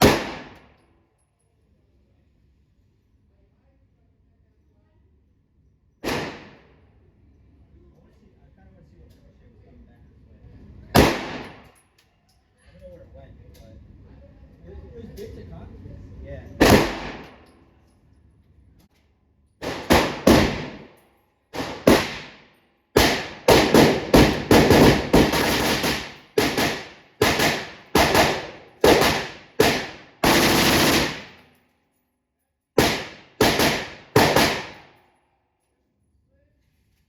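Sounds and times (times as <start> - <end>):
pistol gunshots with echo: 0.0 - 0.7, 6.0 - 6.8, 11.0 - 11.7, 16.6 - 17.5, 19.6 - 21.0, 21.6 - 31.4, 32.8 - 35.0.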